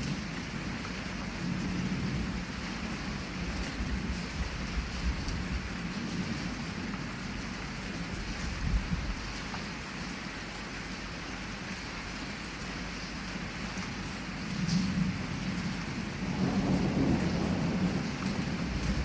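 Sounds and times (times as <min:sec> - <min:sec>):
low rumble of thunder: 0:00.0 - 0:09.4, 0:13.5 - 0:19.0
heavy rain falling: 0:00.0 - 0:19.0.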